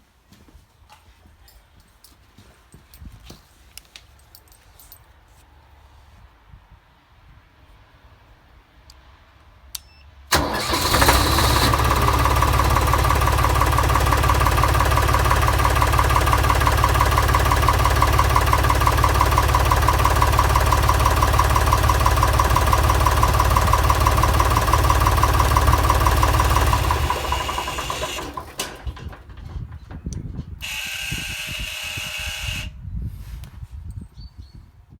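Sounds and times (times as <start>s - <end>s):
diesel tractor engine running: 10.3s - 32.7s
starter cranking engine: 10.3s - 32.7s.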